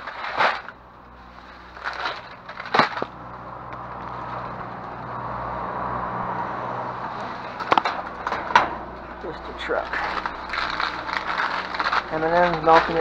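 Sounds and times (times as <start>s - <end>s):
truck approaching: 0.0s - 13.0s
plastic bags crinkling: 9.3s - 13.0s.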